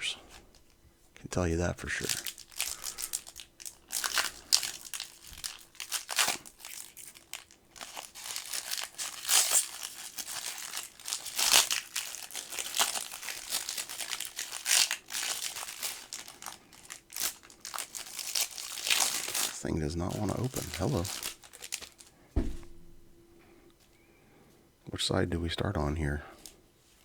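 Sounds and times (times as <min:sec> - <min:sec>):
card pack wrapper crinkling: 0:01.9 - 0:22.1.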